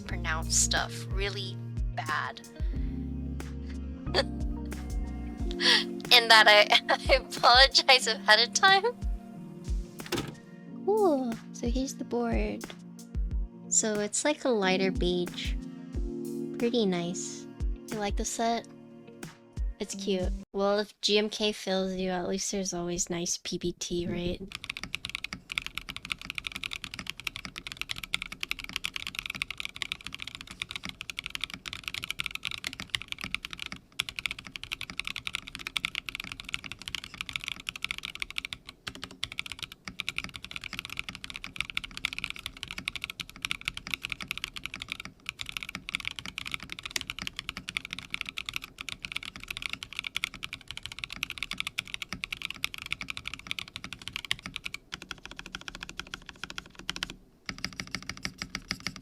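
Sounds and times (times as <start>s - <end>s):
fast typing on mechanical keyboard: 24.5s - 59.0s.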